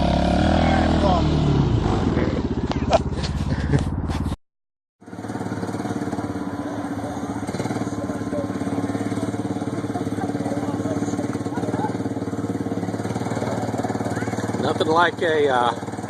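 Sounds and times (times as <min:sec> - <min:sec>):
small engine idling: 0:02.4 - 0:04.1, 0:05.0 - 0:16.0.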